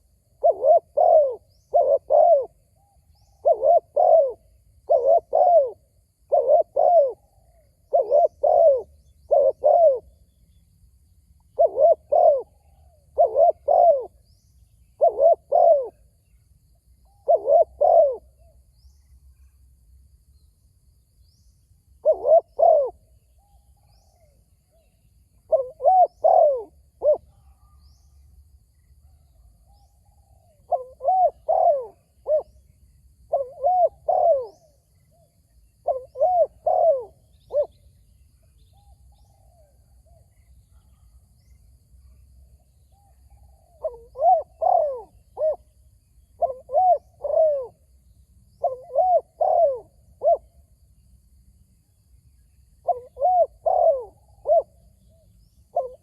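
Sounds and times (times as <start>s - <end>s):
dove cooing: 0.0s - 10.2s, 11.5s - 16.1s, 17.0s - 18.5s, 22.0s - 23.1s, 24.1s - 27.8s, 29.0s - 32.6s, 33.3s - 35.2s, 35.8s - 37.8s, 42.9s - 47.8s, 48.5s - 50.6s, 52.8s - 56.0s.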